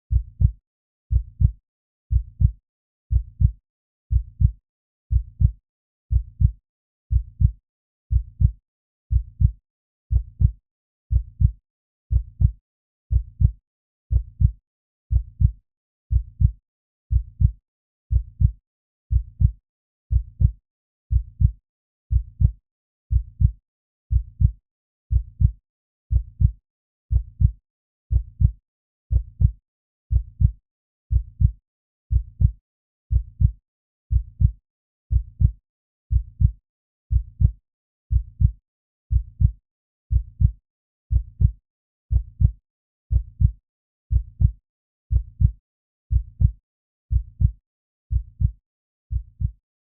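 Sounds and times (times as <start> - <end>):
slow heartbeat thumps: 4.1 - 4.5, 9.1 - 12.5, 25.1 - 25.5, 26.1 - 28.5, 29.1 - 30.5, 31.1 - 32.5, 33.1 - 39.5, 40.1 - 40.5, 41.1 - 41.5, 42.1 - 42.5, 43.1 - 44.5, 45.1 - 45.5, 46.1 - 46.5, 47.1 - 47.5, 48.1 - 48.5, 49.1 - 49.5.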